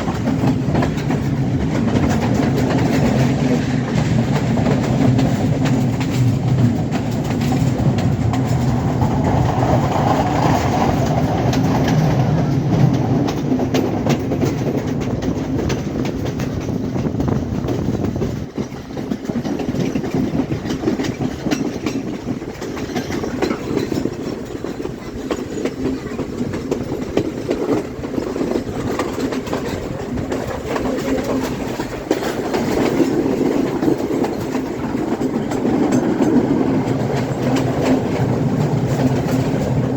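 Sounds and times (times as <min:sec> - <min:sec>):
train rumble: 0:00.0 - 0:39.9
wheels clacking over rail joints: 0:00.0 - 0:39.9.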